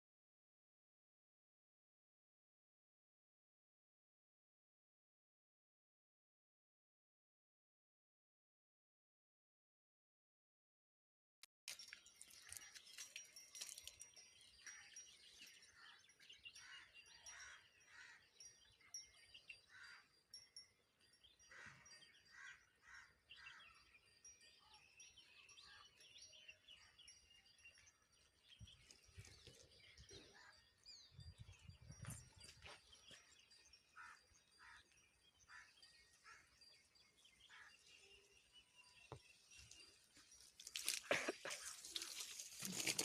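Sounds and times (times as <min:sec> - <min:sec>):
small birds chirping: 0:11.7 - 0:43.0.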